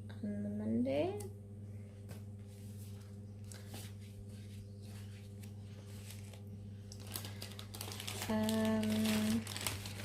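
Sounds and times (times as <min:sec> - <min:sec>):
low electrical hum: 0:00.0 - 0:10.0
paper rustling: 0:02.6 - 0:10.0.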